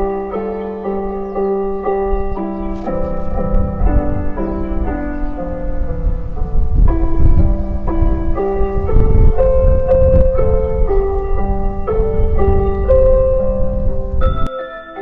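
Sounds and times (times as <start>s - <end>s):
chime melody over loudspeakers: 0.0s - 2.6s, 10.8s - 15.0s.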